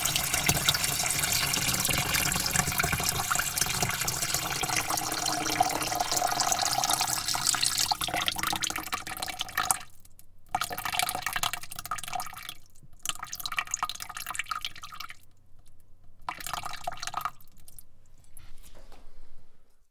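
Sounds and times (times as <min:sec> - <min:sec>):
water spraying into a bucket: 0:00.0 - 0:08.1.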